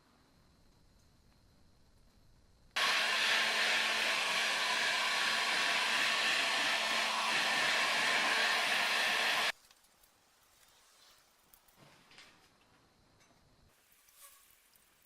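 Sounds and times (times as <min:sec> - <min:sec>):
blower rushing air: 0:02.8 - 0:09.5.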